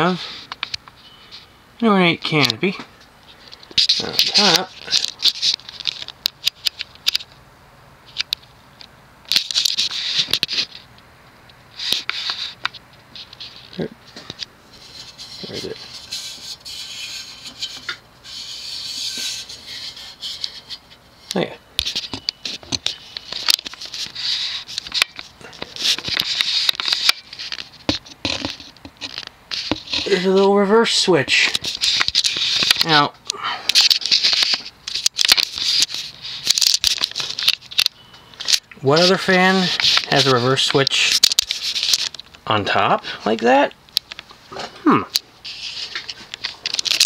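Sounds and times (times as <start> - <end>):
scraping and rustling: 11.7 - 30.6, 31.4 - 33.0, 33.7 - 42.4, 44.2 - 47.0.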